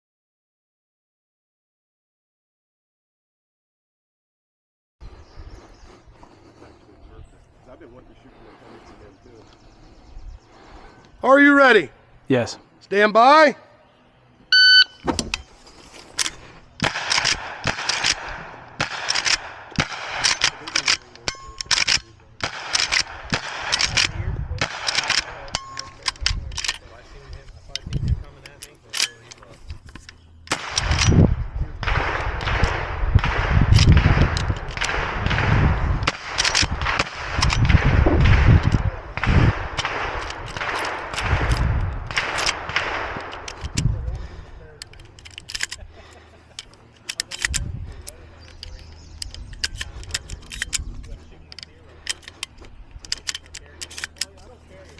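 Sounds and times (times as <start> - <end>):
electronic shot-timer beep: 14.5 - 15.0
rifle shots: 16.2 - 26.1, 30.5 - 44.4.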